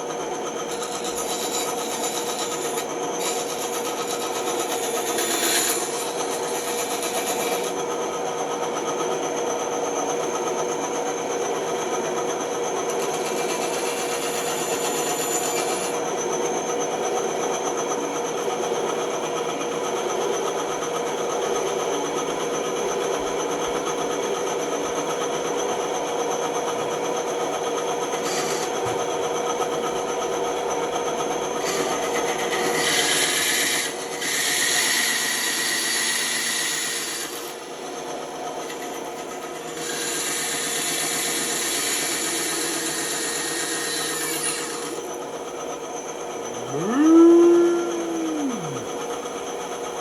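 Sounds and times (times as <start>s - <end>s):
bandsaw cutting wood: 0.7s - 7.8s, 31.6s - 37.6s, 38.6s - 45.1s, 46.5s - 49.0s.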